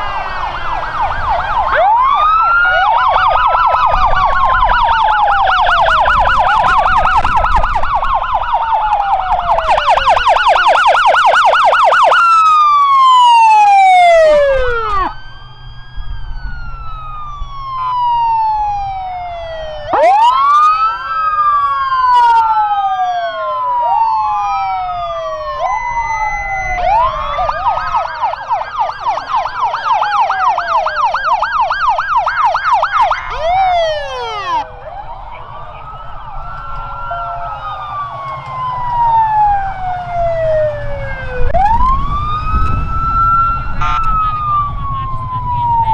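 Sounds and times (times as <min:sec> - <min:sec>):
steady tone: 0:00.0 - 0:03.2
low engine rumble: 0:00.0 - 0:20.0, 0:24.0 - 0:45.9
sirens yelping and wailing: 0:00.0 - 0:45.9.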